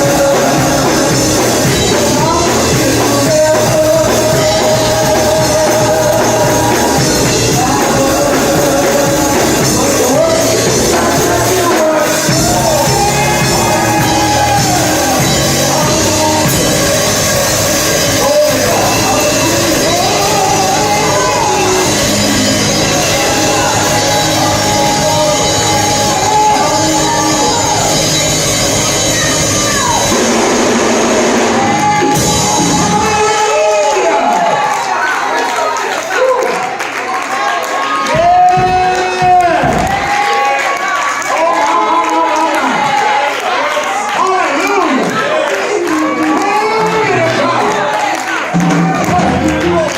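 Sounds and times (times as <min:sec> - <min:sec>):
sustained chords: 0:00.0 - 0:33.3
full band playing: 0:00.0 - 0:49.9
live worship music: 0:00.0 - 0:49.9
voices singing gospel: 0:00.0 - 0:49.9.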